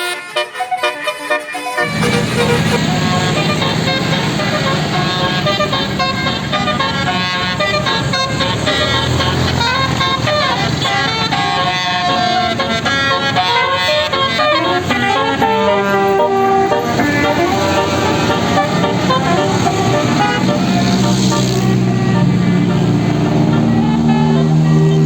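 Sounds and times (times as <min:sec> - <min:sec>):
multi-tone bus horn melody: 0:00.0 - 0:25.0
rush of noise: 0:01.8 - 0:03.5.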